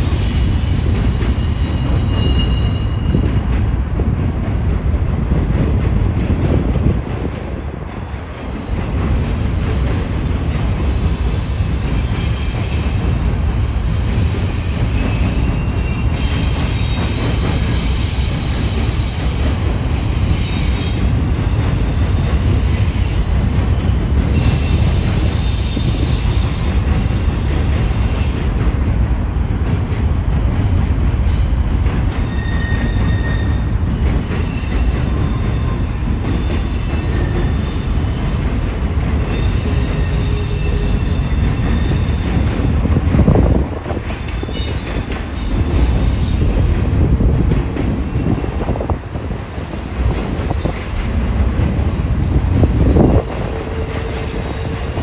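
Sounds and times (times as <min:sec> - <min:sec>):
freight train rumbling past: 0:00.0 - 0:55.0
wheel squeals: 0:10.4 - 0:21.2, 0:52.8 - 0:55.0.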